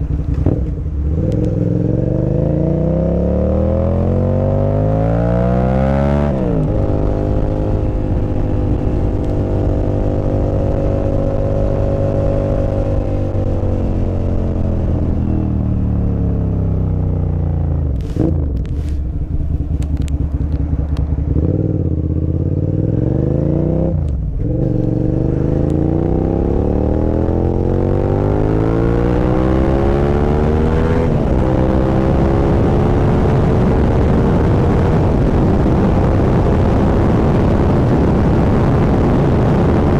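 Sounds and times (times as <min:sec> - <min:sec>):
motorcycle engine revving: 0:00.0 - 0:39.9
exhaust cracks: 0:17.7 - 0:21.4.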